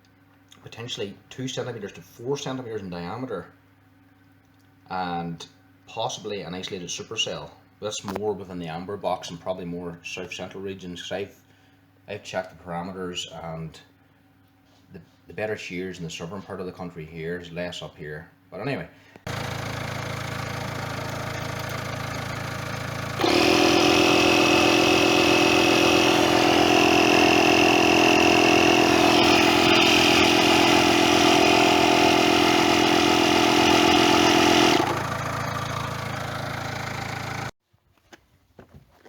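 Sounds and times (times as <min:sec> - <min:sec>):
engine running with whine: 0:19.3 - 0:37.5.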